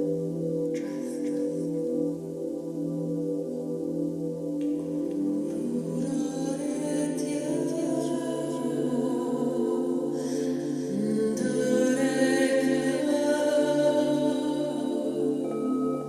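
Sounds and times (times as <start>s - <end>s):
person singing wordless chant: 0.0s - 3.9s, 4.6s - 16.0s
crystal singing bowls ringing: 11.2s - 16.0s.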